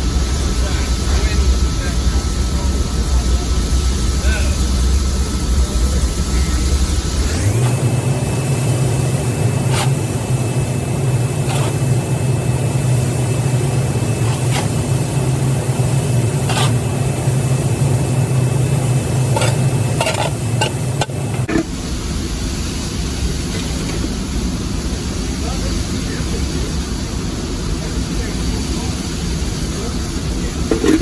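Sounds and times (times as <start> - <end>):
machine humming: 0.0 - 21.8
shovel scraping and knocking: 9.7 - 10.0, 11.5 - 11.8, 16.5 - 16.8, 19.4 - 21.7, 30.7 - 31.0.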